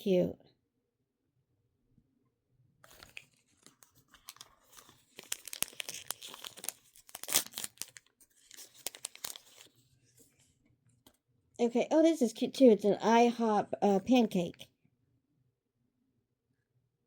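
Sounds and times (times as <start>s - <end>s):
plastic wrapper crinkling and tearing: 2.8s - 9.8s.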